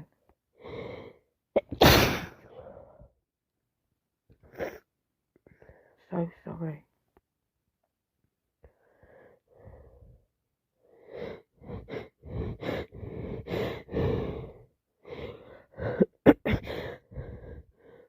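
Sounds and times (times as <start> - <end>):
person sneezing loudly: 1.6 - 2.4
person gasping breaths: 8.7 - 18.0.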